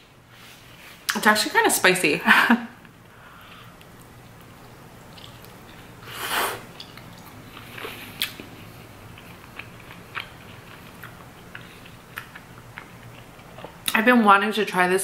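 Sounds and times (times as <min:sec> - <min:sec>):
chewing with mouth clicks: 0:03.5 - 0:14.0.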